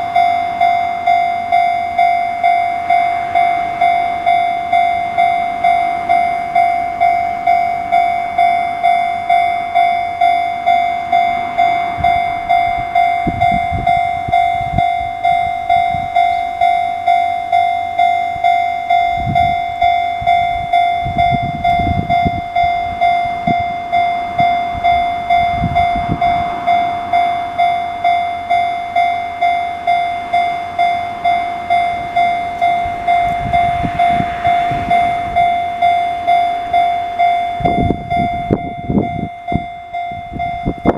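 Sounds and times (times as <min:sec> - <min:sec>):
level-crossing alarm dinging: 0:00.0 - 0:40.9.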